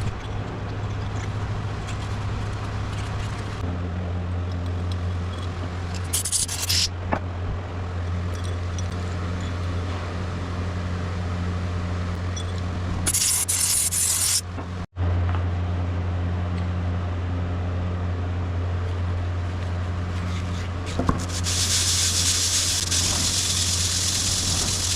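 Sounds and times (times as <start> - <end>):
short hissing sprays: 21.2 - 24.9.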